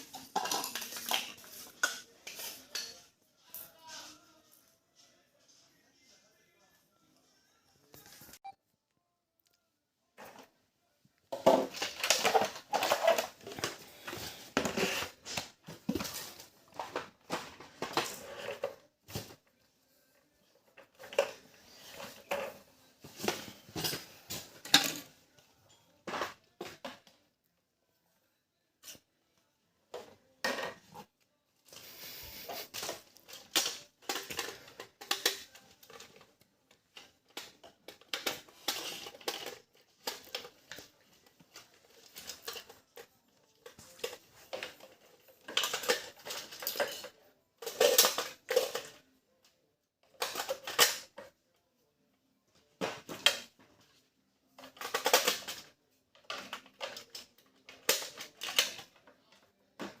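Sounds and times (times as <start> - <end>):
plastic toy parts clattering: 0.0 - 3.1, 11.3 - 19.4, 32.3 - 49.2, 50.0 - 51.4, 54.6 - 60.0.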